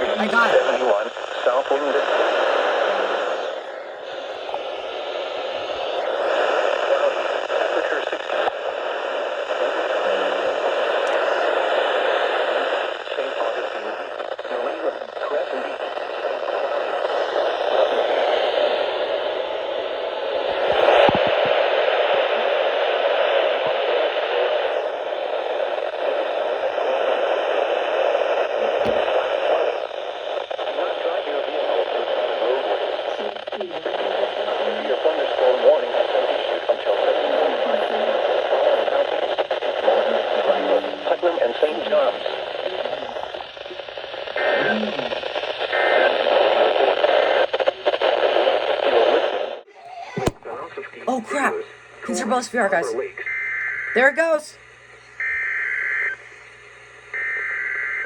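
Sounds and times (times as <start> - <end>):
radio static hiss: 0.0 - 58.0
static crackles: 0.0 - 58.0.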